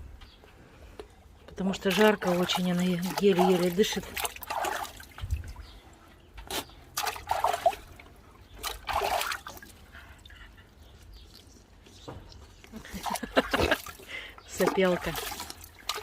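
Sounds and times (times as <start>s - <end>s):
water splashing in a tub: 1.6s - 6.0s, 6.9s - 10.3s, 12.8s - 16.0s.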